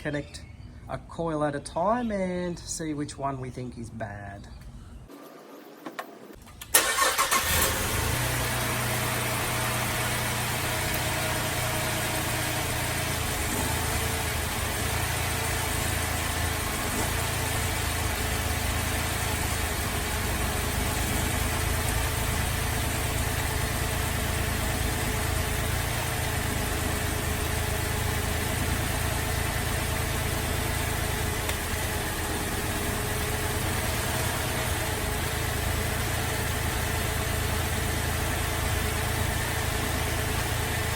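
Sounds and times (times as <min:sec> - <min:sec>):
car engine cranking: 0:06.4 - 0:36.3
engine idling rough: 0:06.8 - 0:40.9.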